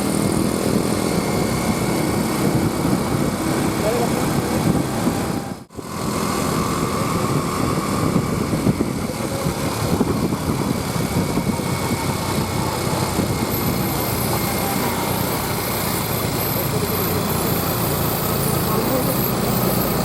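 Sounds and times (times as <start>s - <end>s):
road noise: 0.0s - 20.0s
vehicle engine running: 0.0s - 20.0s.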